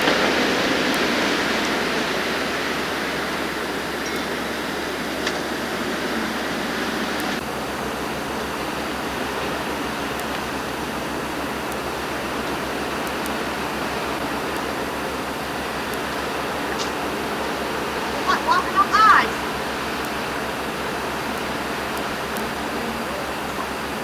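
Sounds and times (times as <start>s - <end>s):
steady rushing hiss: 0.0s - 24.0s.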